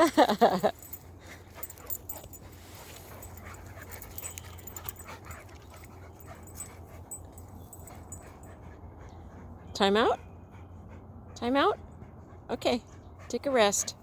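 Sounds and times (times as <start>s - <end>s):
dogs panting: 0.4s - 14.0s.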